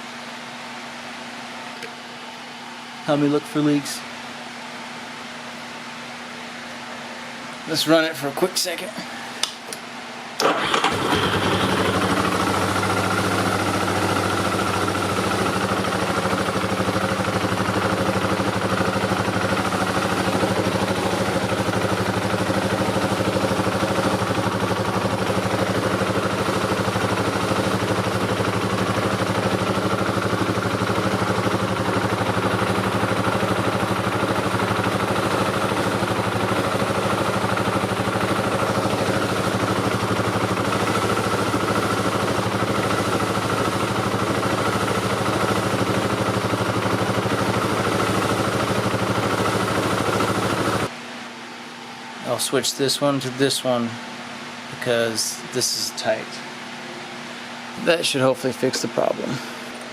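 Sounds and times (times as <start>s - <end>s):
vehicle engine starting and idling: 10.4s - 50.9s.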